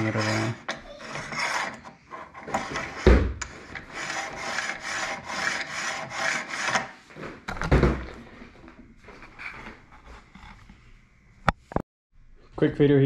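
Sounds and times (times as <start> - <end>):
clamps scraping along base: 0.0 - 7.0.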